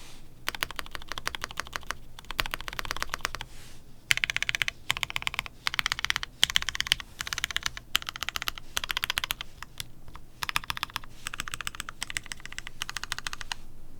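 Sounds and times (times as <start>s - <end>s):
mechanical keyboard typing: 0.5s - 3.5s, 4.1s - 13.6s.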